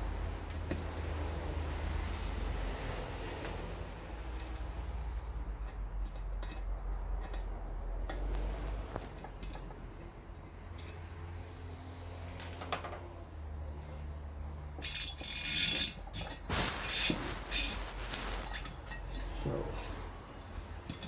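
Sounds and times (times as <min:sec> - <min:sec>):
tools and metal parts clicking: 0:04.3 - 0:08.5, 0:09.1 - 0:11.1, 0:12.4 - 0:13.1, 0:14.8 - 0:16.4.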